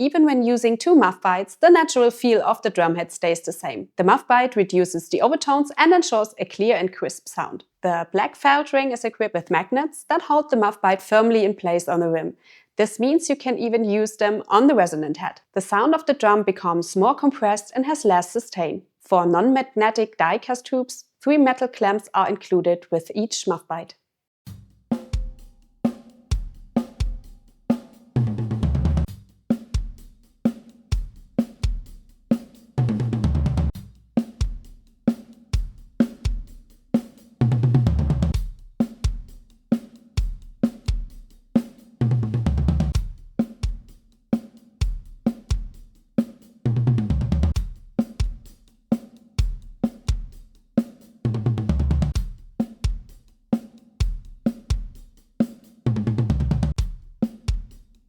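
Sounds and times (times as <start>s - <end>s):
low tom fill: 24.5s - 30.3s, 30.9s - 36.8s, 37.4s - 39.6s, 42.0s - 44.1s, 46.7s - 48.6s, 51.3s - 53.1s
damped drum kit groove: 24.5s - 58.0s.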